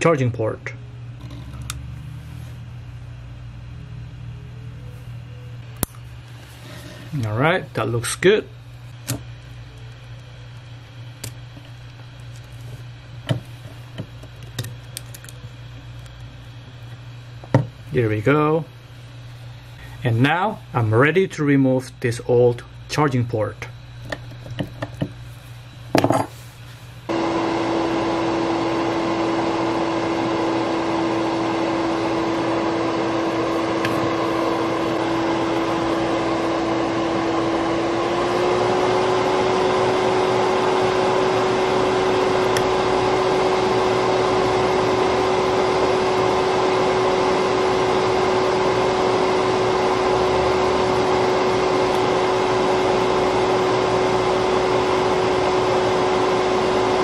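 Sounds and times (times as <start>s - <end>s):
fan hum: 0.0s - 57.0s
hot air blower hissing: 6.3s - 8.2s, 26.0s - 57.0s.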